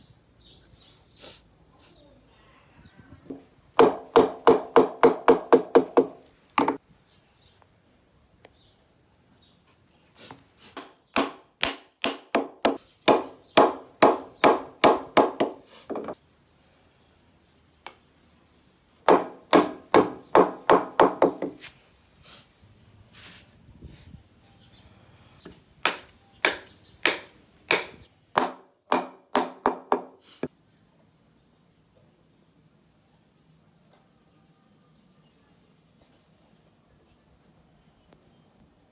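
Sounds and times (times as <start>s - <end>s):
hammer striking wood: 3.3s - 6.8s, 10.8s - 16.1s, 19.1s - 21.6s, 25.8s - 30.2s.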